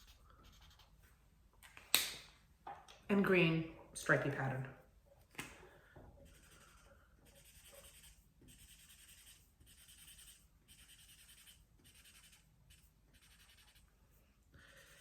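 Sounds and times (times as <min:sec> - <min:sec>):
markers scribbling on paper: 0:00.0 - 0:01.0, 0:06.2 - 0:14.0, 0:14.7 - 0:15.0.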